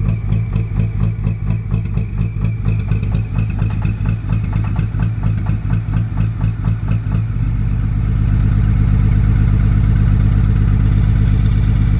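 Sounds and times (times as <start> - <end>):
rhythmic engine knock: 0.0 - 7.3
diesel engine idling: 0.0 - 11.9.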